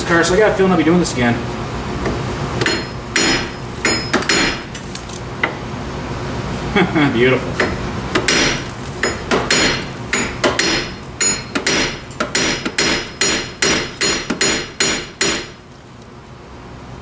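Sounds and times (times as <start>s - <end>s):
hammer striking metal: 2.6s - 4.7s, 7.6s - 15.6s.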